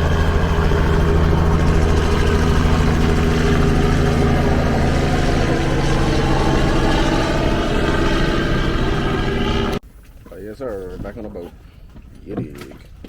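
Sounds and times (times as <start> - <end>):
outboard motor running: 0.0 - 9.8.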